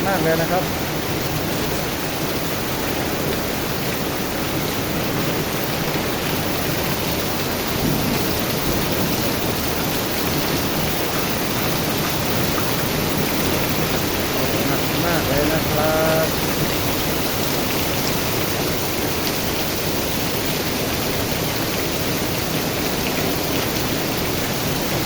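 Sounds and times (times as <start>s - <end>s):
heavy rain pouring: 0.0s - 25.0s.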